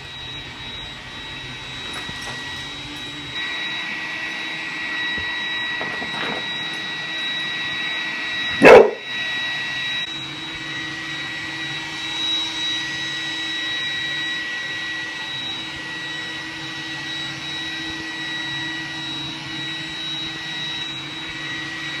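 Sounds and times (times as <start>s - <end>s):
robot vacuum whining: 0.0s - 22.0s
dog barking loudly: 8.6s - 9.1s.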